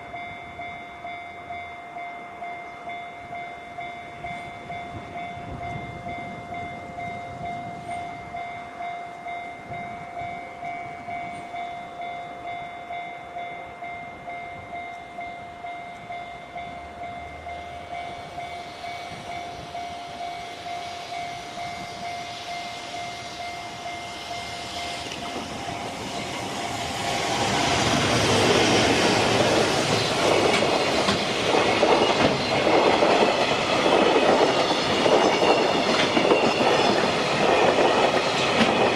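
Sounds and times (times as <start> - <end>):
train wheels clacking on rails: 14.6 - 38.9.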